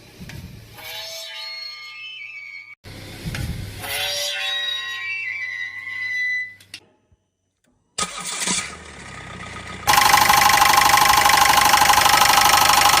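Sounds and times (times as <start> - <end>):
car starter cranking: 8.0 - 13.0
engine running with high whine: 8.3 - 13.0.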